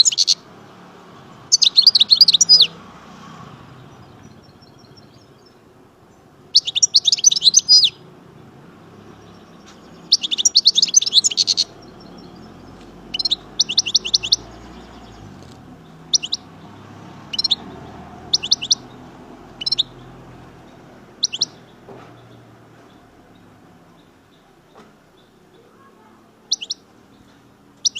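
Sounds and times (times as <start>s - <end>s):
bird chirps: 0.0s - 0.4s, 1.3s - 2.8s, 3.8s - 27.9s
goldfinch twittering: 0.0s - 0.4s, 1.5s - 2.8s, 6.5s - 8.0s, 9.0s - 24.2s, 26.5s - 27.9s.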